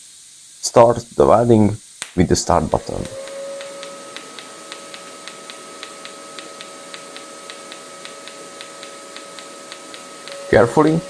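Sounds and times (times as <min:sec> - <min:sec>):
welding machine tone over hiss: 0:00.0 - 0:11.0
light regular ticking: 0:03.0 - 0:10.5.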